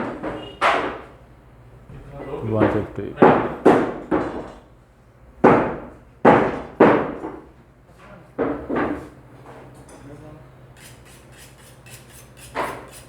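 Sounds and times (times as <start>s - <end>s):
meat cleaver chopping: 10.8s - 13.0s.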